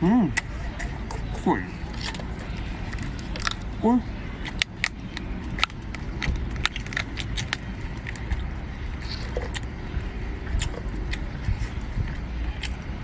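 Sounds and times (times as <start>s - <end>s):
crayfish shells crunching: 1.9s - 9.7s.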